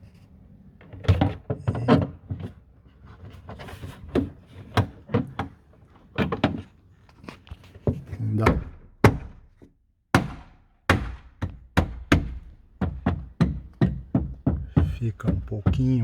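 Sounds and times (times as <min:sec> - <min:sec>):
plastic trim parts knocking: 0:11.4 - 0:16.0.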